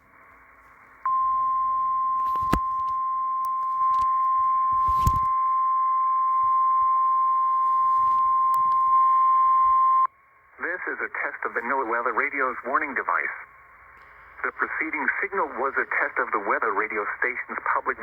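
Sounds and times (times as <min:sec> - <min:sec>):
static crackles: 0:00.0 - 0:18.0
steady radio alarm tone: 0:01.1 - 0:13.6
radio hiss: 0:09.7 - 0:18.0.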